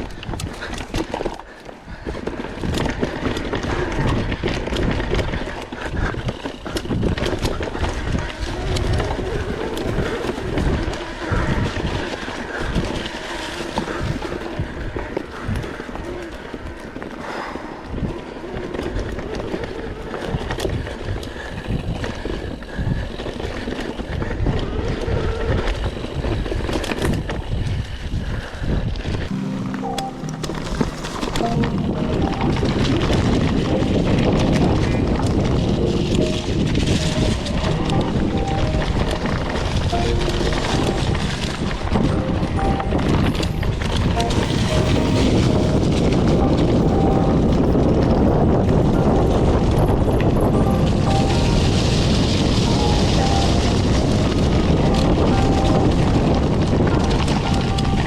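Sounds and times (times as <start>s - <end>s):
bike tyres rumbling on trail: 0.0s - 29.3s, 40.9s - 58.0s.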